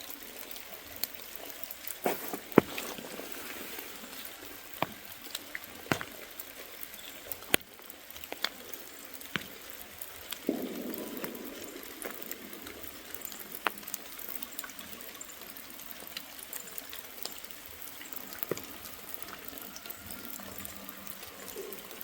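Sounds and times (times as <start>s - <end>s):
fire hissing and crackling: 0.0s - 22.0s.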